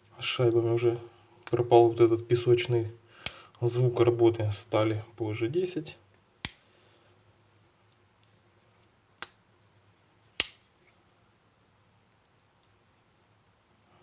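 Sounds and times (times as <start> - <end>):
knife blade locking clicks: 10.4 - 10.6.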